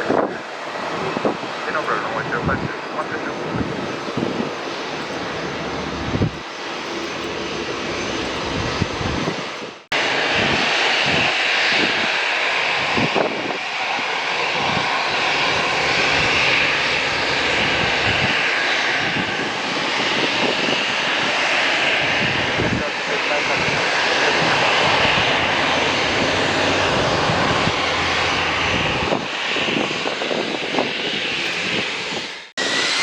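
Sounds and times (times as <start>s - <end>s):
jet engines roaring: 0.0s - 33.0s.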